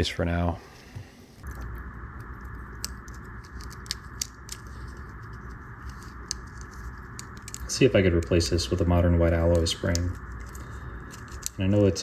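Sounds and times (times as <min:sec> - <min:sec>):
steady background hiss: 0:00.0 - 0:12.0
metal tools clicking on watch parts: 0:02.7 - 0:12.0.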